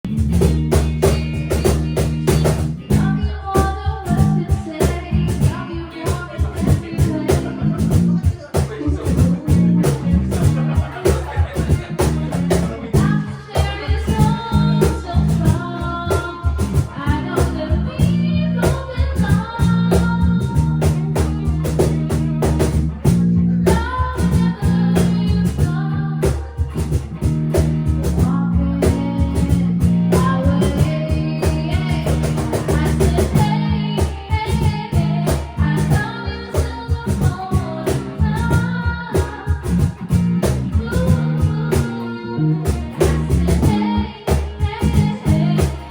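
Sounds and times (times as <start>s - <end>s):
bass guitar: 0.0s - 45.9s
drum kit playing: 0.0s - 45.9s
electric guitar: 0.1s - 45.9s
person singing: 0.8s - 8.2s, 28.0s - 39.9s.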